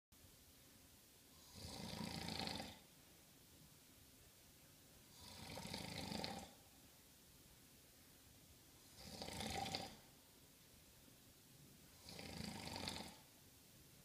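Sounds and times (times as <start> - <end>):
person snoring: 1.4 - 2.8, 5.1 - 6.6, 8.8 - 10.0, 12.0 - 13.3
quiet breathing: 4.7 - 7.0.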